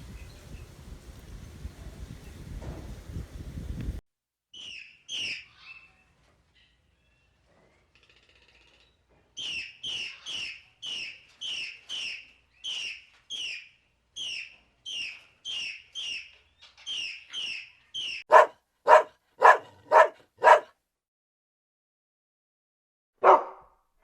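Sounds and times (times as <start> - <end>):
bird chirping: 4.6 - 7.4, 8.0 - 18.4
dog barking: 18.3 - 20.8, 23.2 - 23.8.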